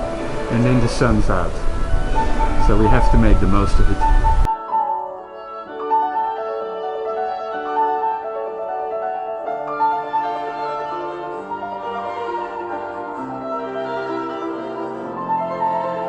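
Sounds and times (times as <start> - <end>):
piano: 0.0 - 16.0
violin: 0.0 - 16.0.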